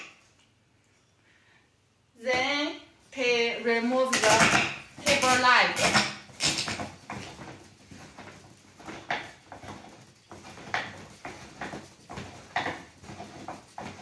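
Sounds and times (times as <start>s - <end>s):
metal knocks and scrapes: 3.9s - 14.0s.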